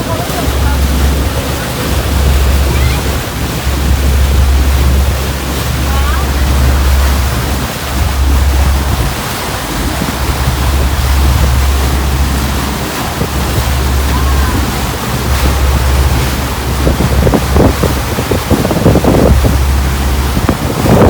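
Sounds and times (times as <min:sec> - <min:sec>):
rushing sea water: 0:00.0 - 0:21.0
steady low rumble: 0:00.0 - 0:21.0
wind buffeting microphone: 0:00.0 - 0:21.0.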